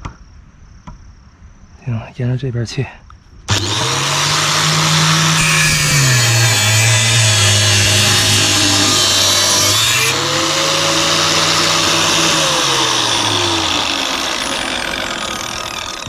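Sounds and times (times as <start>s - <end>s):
power saw cutting with whine: 3.5s - 16.0s.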